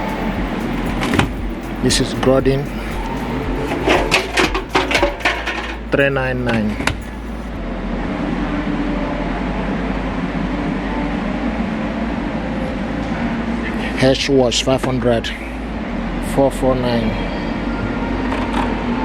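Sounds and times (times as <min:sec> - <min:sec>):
man talking: 0:01.7 - 0:03.1, 0:05.9 - 0:07.0, 0:13.7 - 0:15.6.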